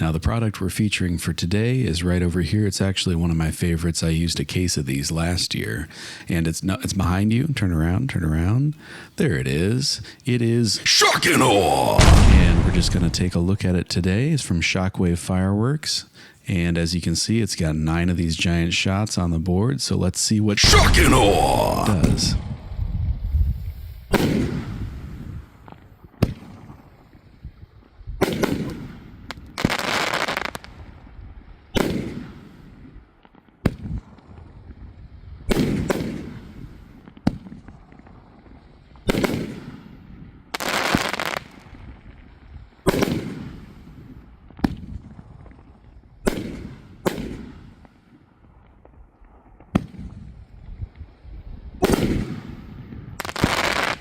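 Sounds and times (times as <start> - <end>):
firework launch thumps: 12.0 - 13.4
firework crackle: 20.6 - 31.0, 51.8 - 54.0.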